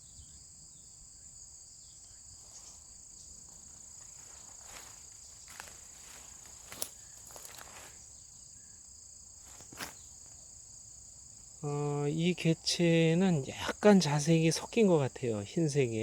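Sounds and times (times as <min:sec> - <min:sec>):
insects trilling: 0:00.0 - 0:16.0
brief crackles: 0:06.5 - 0:07.8.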